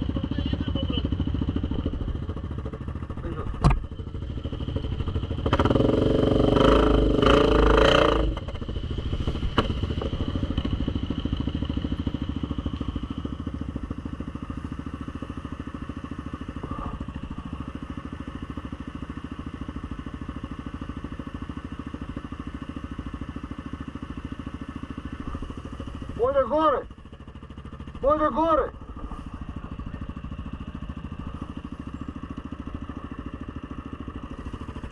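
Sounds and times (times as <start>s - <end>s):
atv engine revving: 0.0s - 34.9s.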